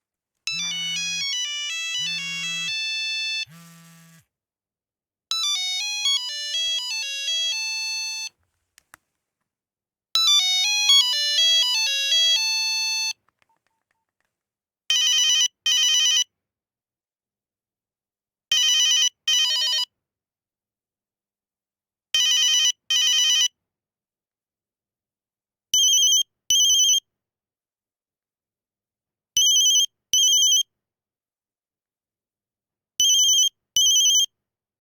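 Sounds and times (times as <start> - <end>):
electronic ringtone melody: 0.5 - 3.5, 5.4 - 8.3, 10.3 - 13.1
trilling phone ring: 0.5 - 3.5.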